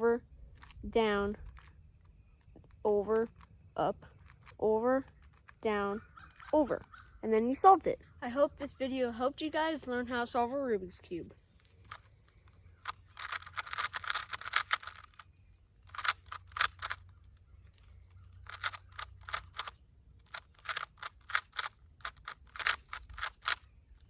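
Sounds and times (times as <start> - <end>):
puzzle cube plastic clicks: 0.4 - 7.2, 11.6 - 24.0.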